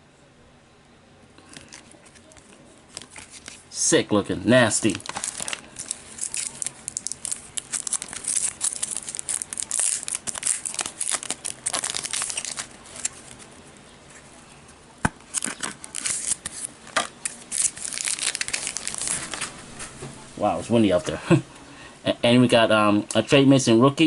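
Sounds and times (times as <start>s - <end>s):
packaging crinkling and tearing: 1.5s - 3.6s, 4.7s - 13.6s, 15.1s - 20.0s.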